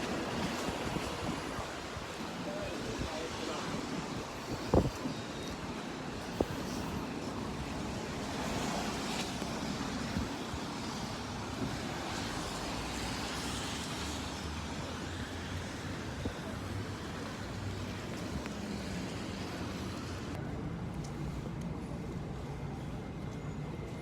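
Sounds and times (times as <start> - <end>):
city traffic noise: 0.0 - 24.0.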